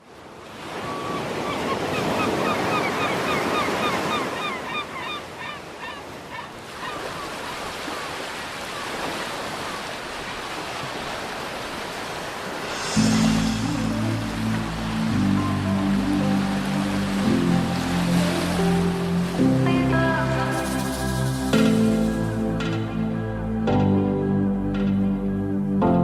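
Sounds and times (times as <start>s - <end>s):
waves washing on a beach: 0.0s - 22.8s
bird calling rapidly: 1.0s - 7.4s.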